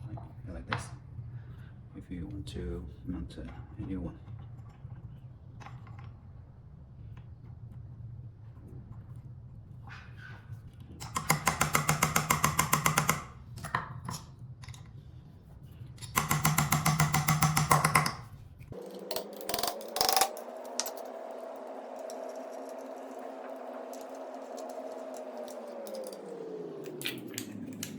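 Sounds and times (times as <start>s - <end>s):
steady hum of several tones: 18.8s - 27.9s.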